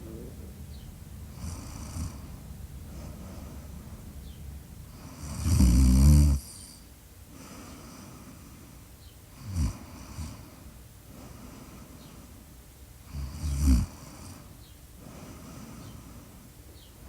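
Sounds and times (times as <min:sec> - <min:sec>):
soft breathing: 0:01.2 - 0:05.4, 0:06.4 - 0:13.2, 0:13.9 - 0:17.0
person snoring: 0:05.1 - 0:06.8.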